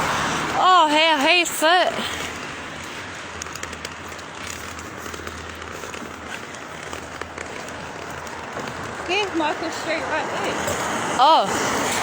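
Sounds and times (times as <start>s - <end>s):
small crackling ticks: 2.1s - 9.4s.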